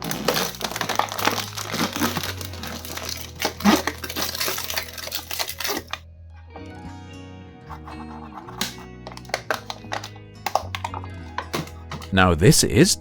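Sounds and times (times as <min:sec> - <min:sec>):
plastic packaging crinkling: 0:00.0 - 0:06.0
background music: 0:00.0 - 0:13.0.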